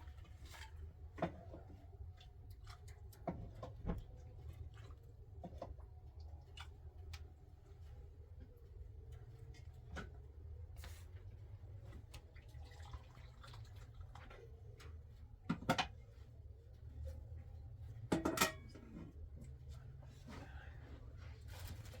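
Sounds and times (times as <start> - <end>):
dishes and utensils clattering: 18.1 - 19.0.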